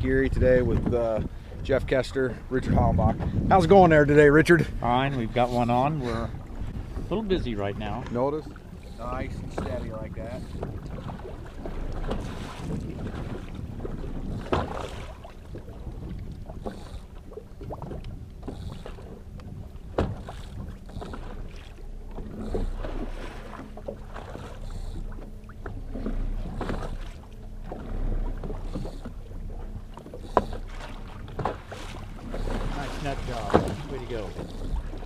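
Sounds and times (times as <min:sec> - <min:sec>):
boat motor running: 0:00.0 - 0:35.0
wind on microphone: 0:00.0 - 0:35.0
sharp knocks: 0:33.4 - 0:33.8.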